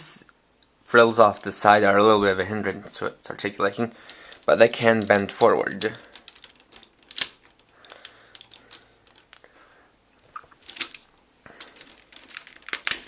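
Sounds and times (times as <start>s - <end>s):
plastic toy parts clicking: 4.0s - 9.5s, 10.6s - 13.0s.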